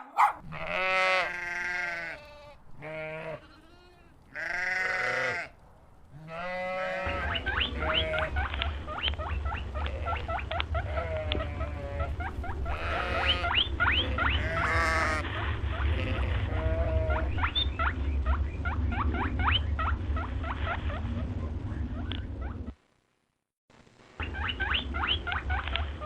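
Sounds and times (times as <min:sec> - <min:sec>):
low rumble: 0:00.4 - 0:22.8
small animals squeaking: 0:06.4 - 0:22.8, 0:24.2 - 0:26.0.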